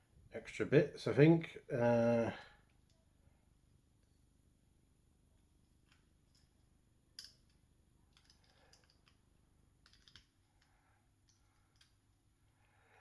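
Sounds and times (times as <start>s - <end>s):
clicks of plastic toy parts: 7.2s - 9.2s.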